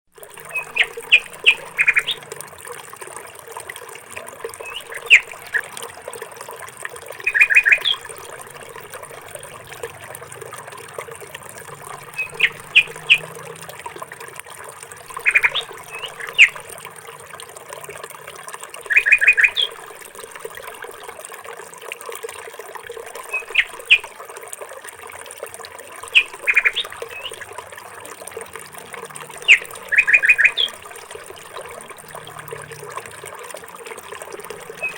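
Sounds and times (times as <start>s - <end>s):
songbird chirping: 0.4s - 2.3s, 4.6s - 5.7s, 7.2s - 11.0s, 11.6s - 13.7s, 15.0s - 16.8s, 18.8s - 19.9s, 23.3s - 24.1s, 26.1s - 27.5s, 29.4s - 30.9s, 34.7s - 34.9s.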